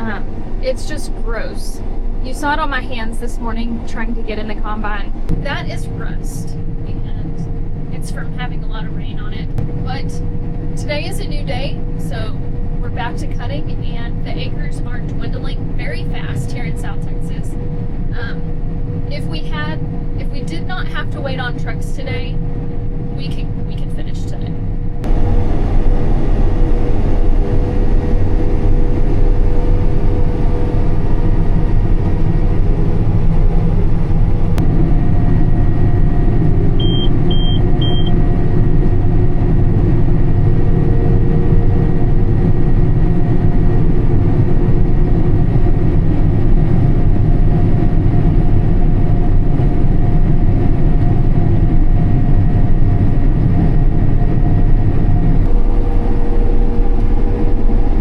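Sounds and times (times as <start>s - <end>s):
combine harvester engine drone: 0.0s - 58.0s
short high beeps: 36.8s - 38.2s.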